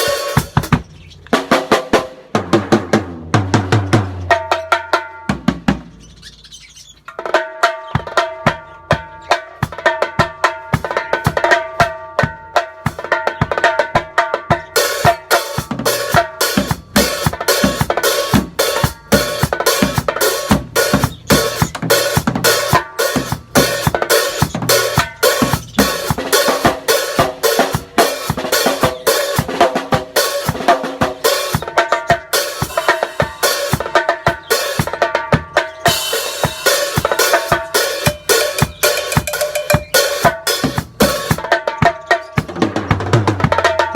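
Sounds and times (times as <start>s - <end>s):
drum kit beat: 0.0s - 6.2s, 7.1s - 43.9s.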